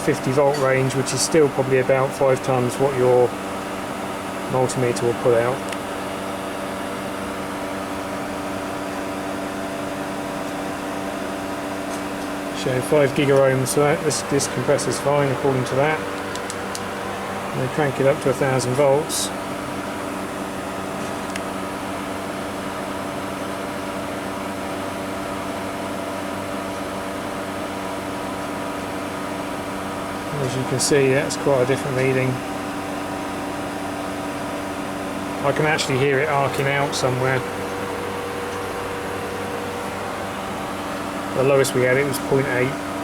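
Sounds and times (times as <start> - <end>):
fan-like whir: 0.0 - 43.0
low machinery hum: 0.0 - 43.0.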